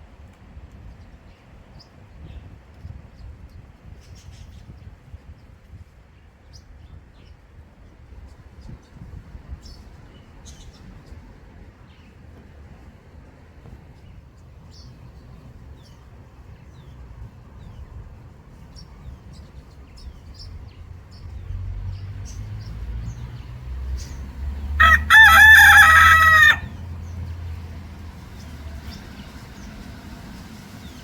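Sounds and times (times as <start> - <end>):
small birds chirping: 13.9 - 31.0
rooster crowing: 24.6 - 26.9.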